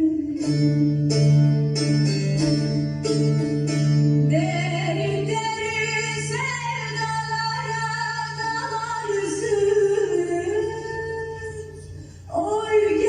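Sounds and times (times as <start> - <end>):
woman singing slow folk tune: 0.0 - 1.2, 4.3 - 13.0
plucked string strokes: 0.0 - 13.0.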